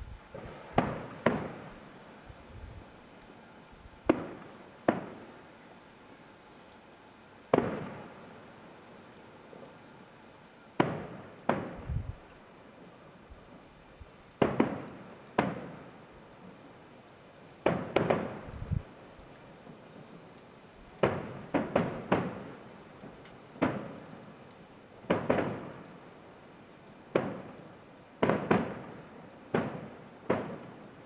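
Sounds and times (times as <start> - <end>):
distant fireworks bangs: 0.0 - 3.0, 4.0 - 5.5, 7.5 - 8.8, 10.8 - 12.3, 14.4 - 16.2, 17.6 - 19.0, 21.0 - 26.0, 27.1 - 31.0.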